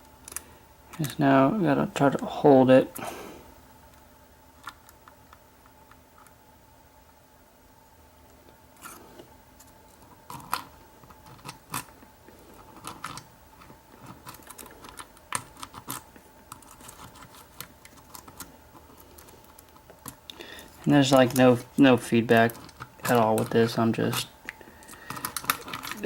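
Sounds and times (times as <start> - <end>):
lock pick clicking and scraping: 22.5 - 26.0.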